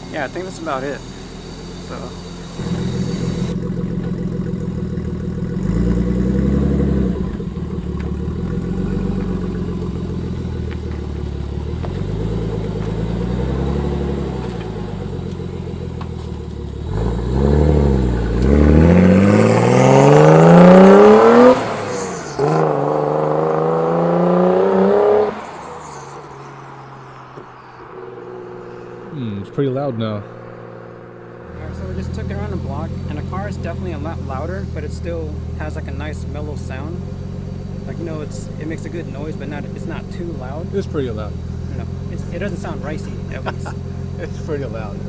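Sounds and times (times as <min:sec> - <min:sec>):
loud exhaust note: 0:00.0 - 0:26.9
car engine revving: 0:00.0 - 0:45.0.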